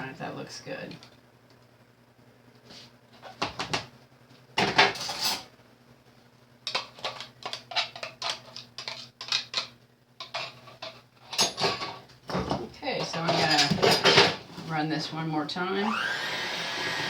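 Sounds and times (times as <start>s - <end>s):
utensils and dishes clinking: 6.7s - 14.4s.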